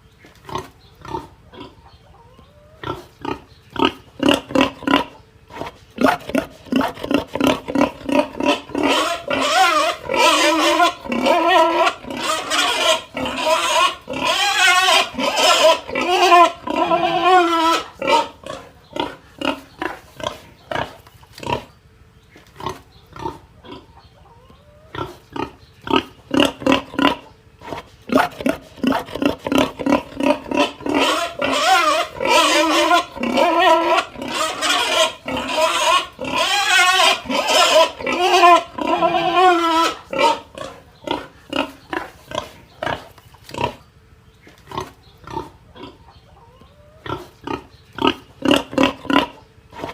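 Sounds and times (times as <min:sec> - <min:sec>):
pig crying out: 0:06.0 - 0:21.7, 0:28.1 - 0:43.8, 0:44.8 - 0:49.9.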